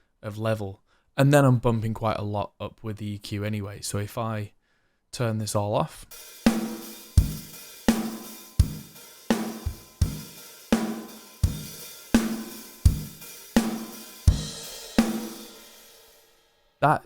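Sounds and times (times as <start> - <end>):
rock drum beat: 6.1 - 16.4
cymbals: 6.1 - 16.7.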